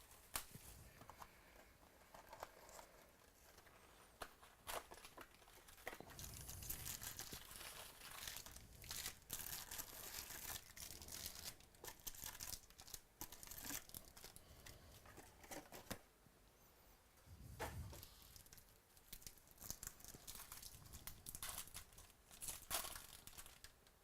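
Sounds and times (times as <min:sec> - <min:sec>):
foil wrappers tearing and crinkling: 0:04.4 - 0:14.5, 0:18.4 - 0:23.7.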